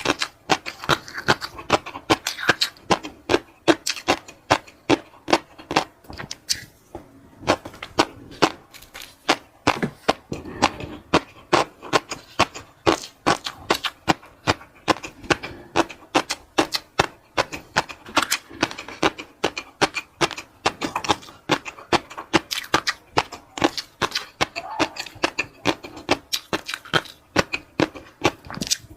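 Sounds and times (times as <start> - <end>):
person chewing: 0.0 - 28.9.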